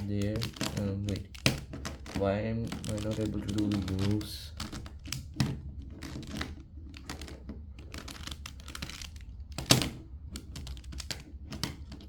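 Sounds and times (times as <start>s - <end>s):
plastic puzzle cube clicking: 0.0s - 12.0s.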